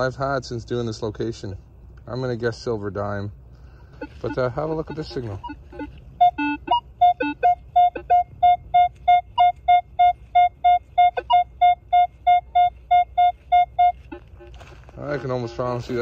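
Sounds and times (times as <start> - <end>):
metal detector beeping: 3.9 - 16.0.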